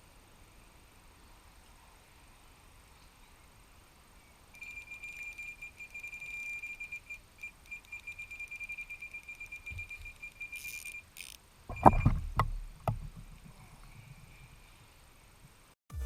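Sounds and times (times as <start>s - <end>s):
bite alarm beeping: 4.6s - 12.4s.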